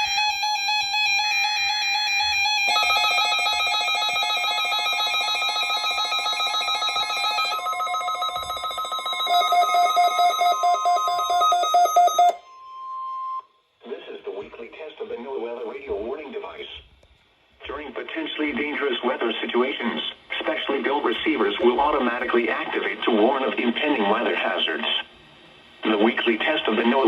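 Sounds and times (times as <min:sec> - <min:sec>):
fast-pulsing electronic alarm: 0:00.0 - 0:13.4.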